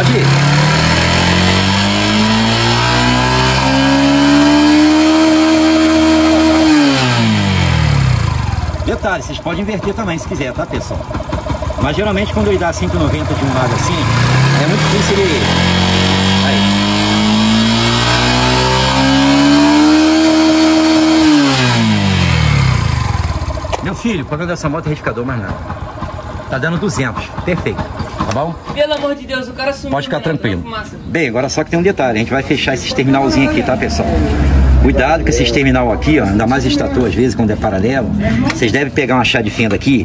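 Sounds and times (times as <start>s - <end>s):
motorcycle engine revving: 0.0s - 28.9s, 32.2s - 40.0s.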